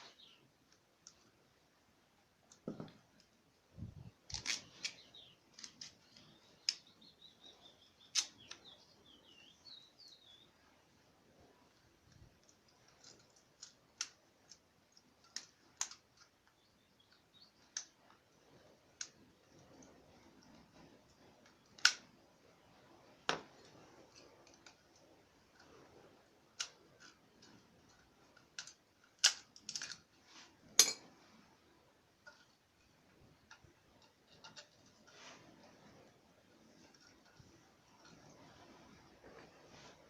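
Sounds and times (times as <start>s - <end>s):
sharp clicks and light knocks: 12.0s - 18.2s, 26.5s - 31.3s, 32.2s - 35.4s.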